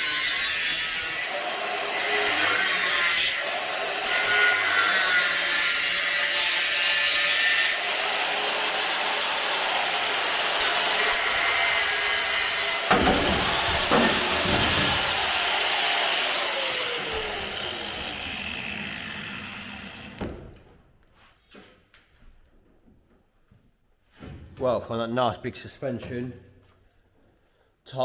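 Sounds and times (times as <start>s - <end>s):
power tool cutting metal: 0.0s - 20.2s
clunk: 12.7s - 15.6s
low knocks: 12.9s - 15.5s.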